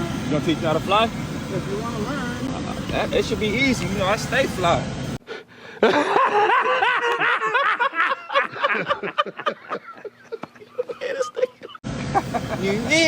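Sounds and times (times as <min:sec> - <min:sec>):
people giggling: 0:05.8 - 0:13.0.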